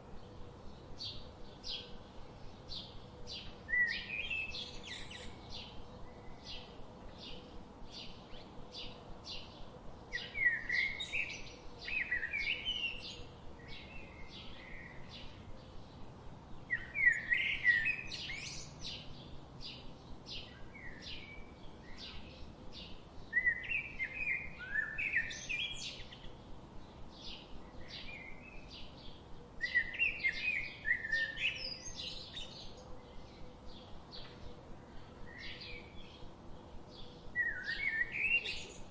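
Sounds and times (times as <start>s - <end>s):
bird chirps: 16.7s - 19.1s, 37.0s - 38.9s.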